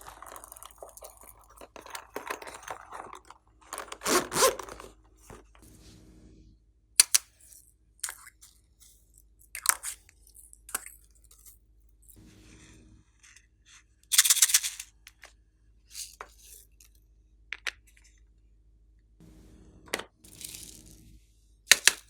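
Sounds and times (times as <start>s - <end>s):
slime squishing: 0.0s - 3.4s.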